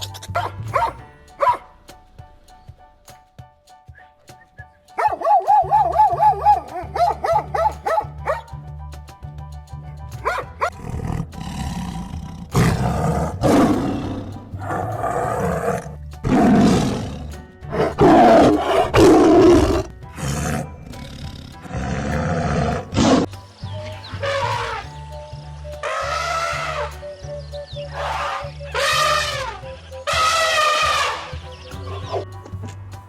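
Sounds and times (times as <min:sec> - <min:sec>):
background music with low beat: 0:00.0 - 0:33.0
dog yipping and whimpering: 0:05.0 - 0:08.5
large animal roaring and growling: 0:10.7 - 0:23.3, 0:25.8 - 0:26.9.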